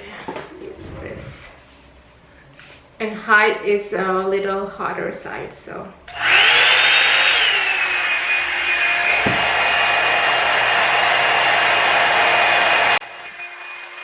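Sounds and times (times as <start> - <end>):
blowing air rush: 0.5 - 1.7
hair dryer fan whine: 6.1 - 14.0.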